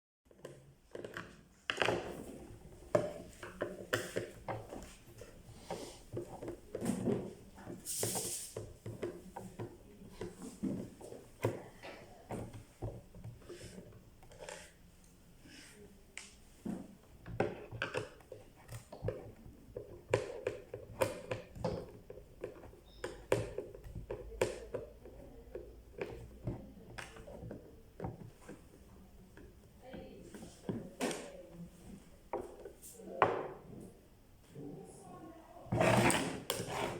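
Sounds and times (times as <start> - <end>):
hard objects clicking and knocking: 16.2 - 28.7.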